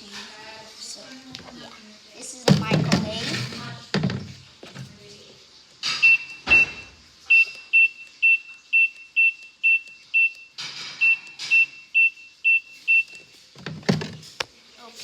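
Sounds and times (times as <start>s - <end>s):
handling noise: 2.5s - 5.1s, 13.2s - 14.4s
microwave beeping: 5.8s - 14.2s.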